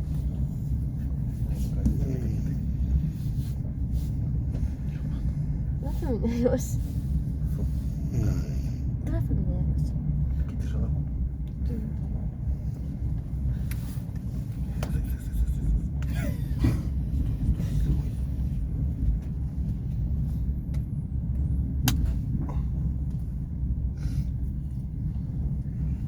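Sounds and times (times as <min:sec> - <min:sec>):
train carriage rumble: 0:00.0 - 0:26.0.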